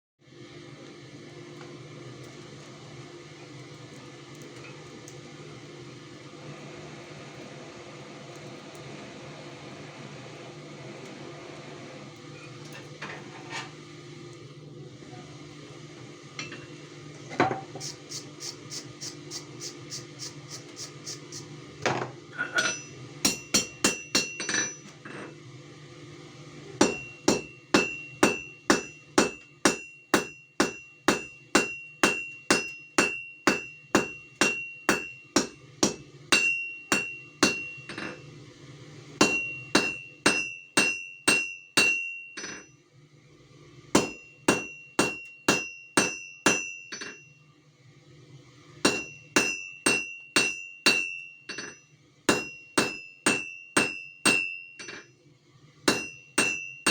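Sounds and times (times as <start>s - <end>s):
hammer striking steel on anvil: 22.4s - 25.3s, 26.8s - 38.2s, 39.2s - 42.7s, 44.0s - 47.3s, 48.8s - 55.1s, 55.9s - 56.9s.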